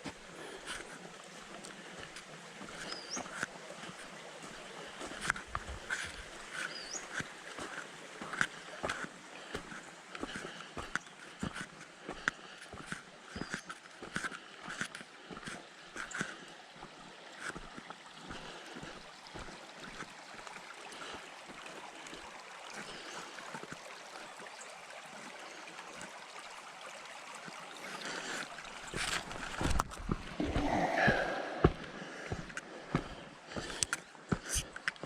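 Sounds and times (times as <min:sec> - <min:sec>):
footsteps on trail: 0:00.0 - 0:20.1, 0:27.8 - 0:35.0
stream flowing: 0:00.0 - 0:35.0.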